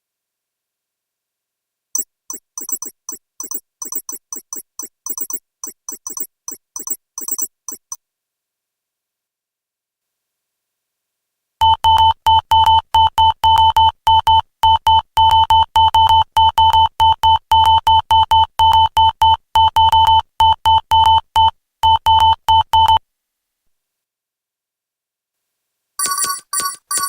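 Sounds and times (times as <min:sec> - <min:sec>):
short electronic beeps: 0:02.0 - 0:08.0.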